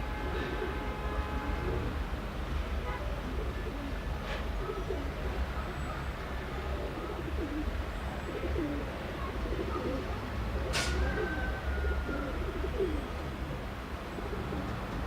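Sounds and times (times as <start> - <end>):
pigeons cooing: 3.3 - 5.5, 6.4 - 15.0.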